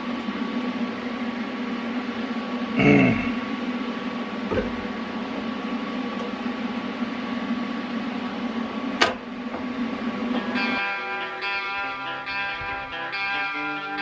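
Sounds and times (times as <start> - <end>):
welding arc buzzing: 10.2 - 14.0.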